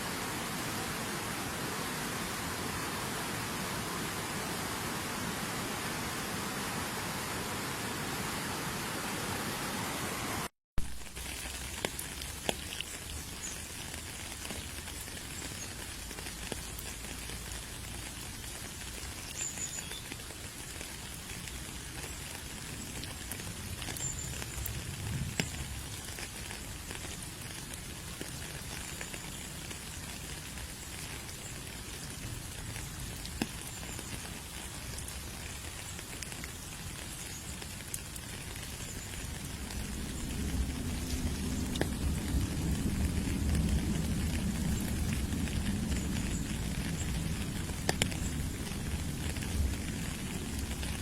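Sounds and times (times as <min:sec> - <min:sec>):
waterfall rushing hiss: 0:00.0 - 0:10.5
water spattering and dripping: 0:10.8 - 0:51.0.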